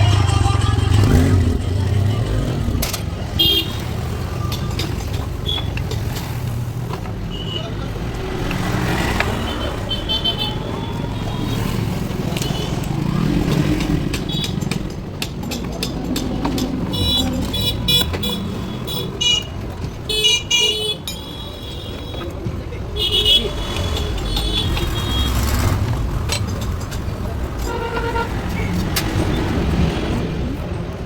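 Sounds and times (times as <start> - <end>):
roadside traffic: 0.0 - 31.0
sharp clicks and knocks: 2.7 - 7.3, 12.0 - 20.1, 23.7 - 30.3
vehicle horns honking: 3.3 - 4.2, 7.2 - 8.0, 8.9 - 11.8, 16.9 - 22.3, 22.9 - 25.9, 27.6 - 28.9.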